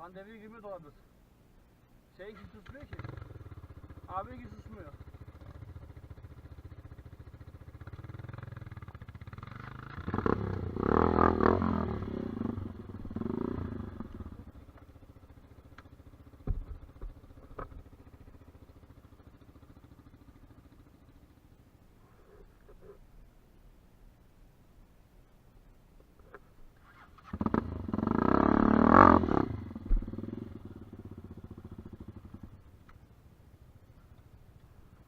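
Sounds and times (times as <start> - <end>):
motorcycle engine idling and revving: 2.3 - 22.1, 26.8 - 35.0
sharp knocks: 16.4 - 17.8.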